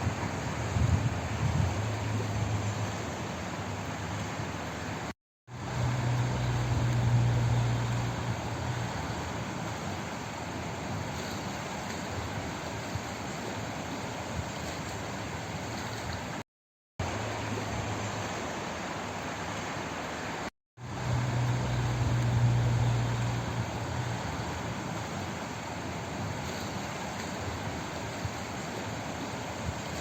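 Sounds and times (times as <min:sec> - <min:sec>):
flowing water rushing: 0:00.0 - 0:30.0
low hum: 0:20.8 - 0:24.6.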